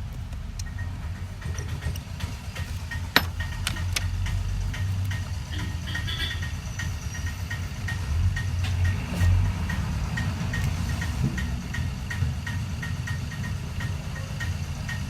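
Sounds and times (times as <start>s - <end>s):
sharp clicks and taps: 0.1s - 6.2s
faint repeating ticks: 3.8s - 15.0s.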